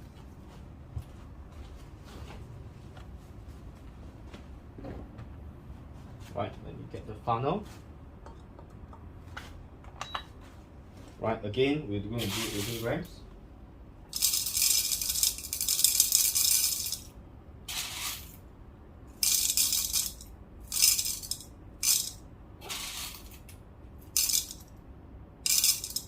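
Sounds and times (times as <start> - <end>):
coffee beans rattling into container: 12.2 - 12.8, 14.1 - 17.1, 17.7 - 18.4, 19.2 - 23.4, 24.0 - 24.6, 25.4 - 26.0.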